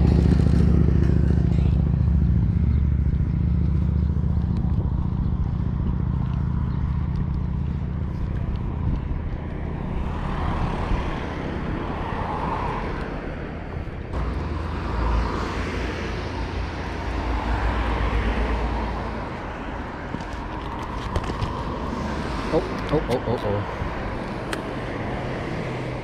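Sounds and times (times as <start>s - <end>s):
low rumble: 0.0s - 22.8s
road traffic passing: 0.0s - 26.0s.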